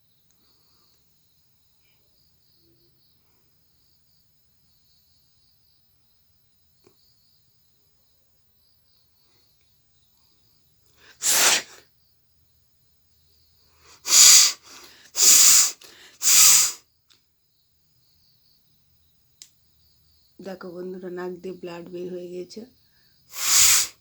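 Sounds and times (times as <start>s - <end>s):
woman blowing her nose: 11.1s - 11.8s, 14.0s - 16.8s, 23.3s - 24.0s
short breaths: 13.8s - 16.8s, 23.3s - 24.0s.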